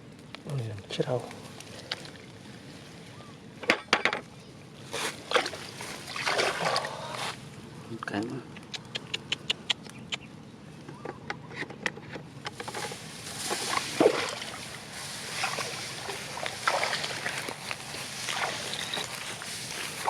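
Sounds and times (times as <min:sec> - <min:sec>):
water sloshing and splashing: 0:01.3 - 0:07.5, 0:12.5 - 0:20.0.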